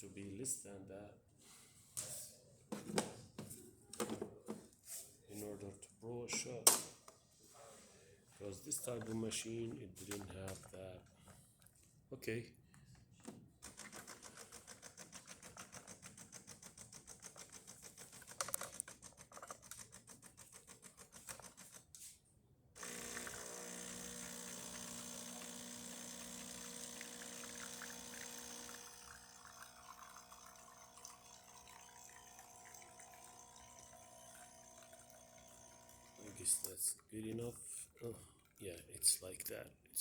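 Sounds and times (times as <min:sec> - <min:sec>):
espresso machine ticking: 0:22.8 - 0:36.6
espresso machine pump humming: 0:22.8 - 0:36.7.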